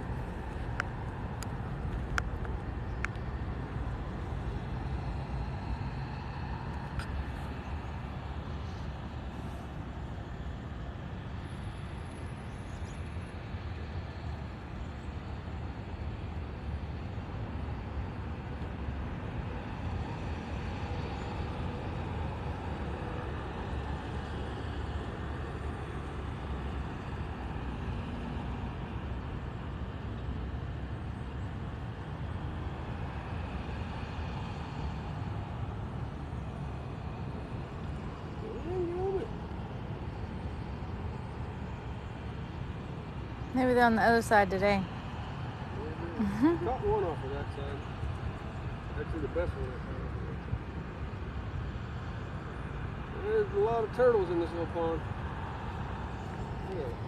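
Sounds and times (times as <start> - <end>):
low outdoor rumble: 0.0 - 57.0
faint sharp clicks: 0.8 - 3.3.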